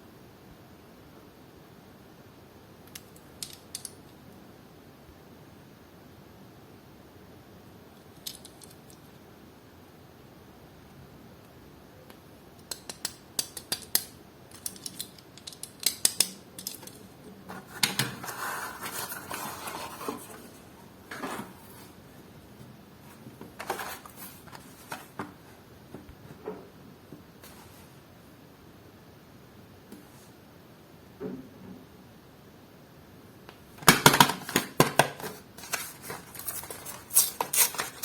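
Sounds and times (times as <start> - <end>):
packaging clicks and taps: 12.6 - 17.0
packaging rustling: 16.6 - 22.1, 23.1 - 25.6, 33.8 - 38.0.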